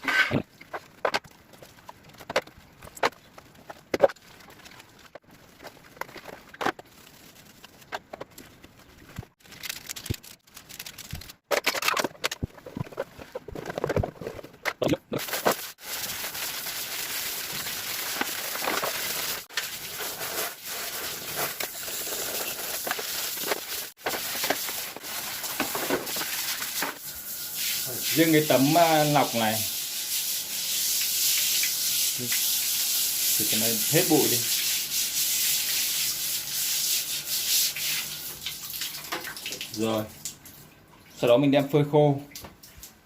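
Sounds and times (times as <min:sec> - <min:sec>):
water spraying: 0:15.2 - 0:40.0.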